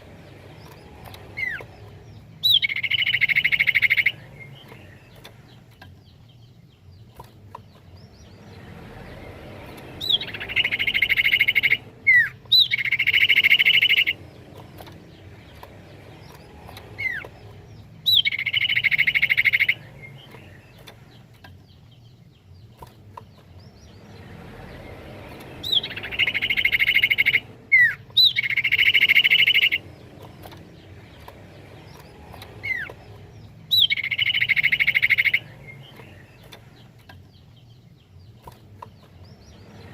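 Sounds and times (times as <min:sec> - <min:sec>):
bird whistles and trills: 0:00.4 - 0:05.3, 0:10.0 - 0:21.2, 0:25.4 - 0:37.7.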